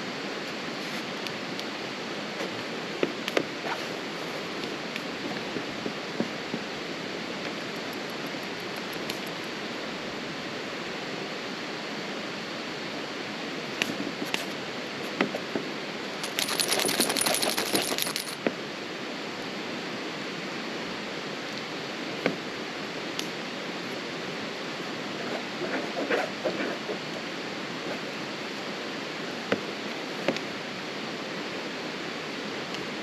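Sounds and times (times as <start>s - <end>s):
crackles and clinks: 16.2s - 18.4s.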